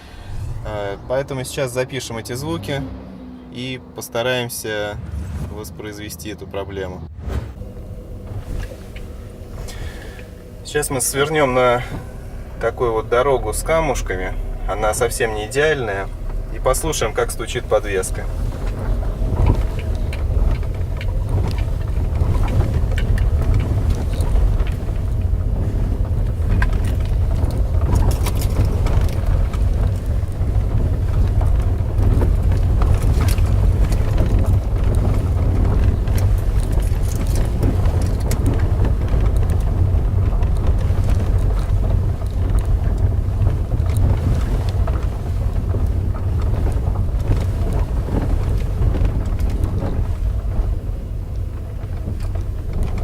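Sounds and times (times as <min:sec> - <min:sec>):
low road rumble in car cabin: 0:00.0 - 0:53.0
rubbery plastic rattle: 0:17.7 - 0:53.0.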